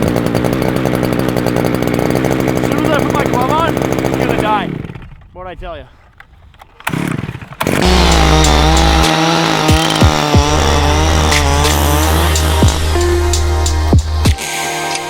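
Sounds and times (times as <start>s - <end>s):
distorted buzzing synth: 7.8s - 14.4s
falling pitch sweeps: 7.8s - 14.4s
heavy bass: 7.8s - 14.4s
dubstep music: 7.8s - 15.0s.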